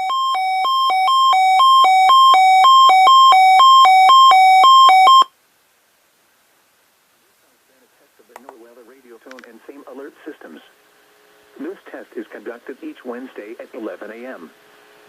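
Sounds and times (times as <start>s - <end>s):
two-tone radio alert alarm: 0.0s - 5.3s.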